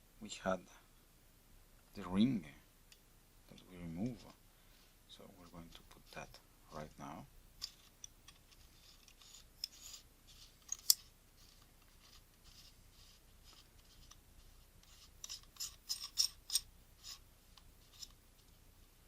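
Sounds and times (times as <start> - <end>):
small metal parts scraping: 7.6 - 18.2.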